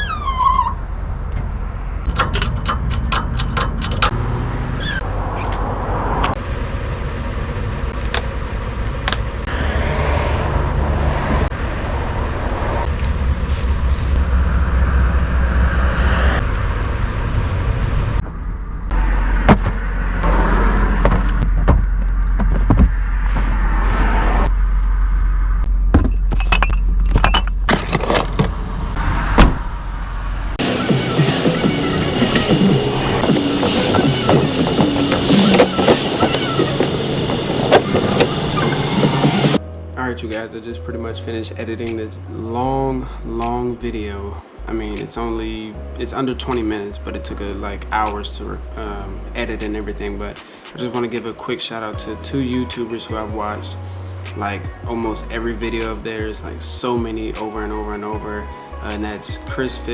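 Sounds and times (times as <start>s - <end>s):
vehicle engine rumble: 0.0s - 51.1s
sharp clicks and knocks: 1.3s - 4.2s, 30.6s - 39.6s.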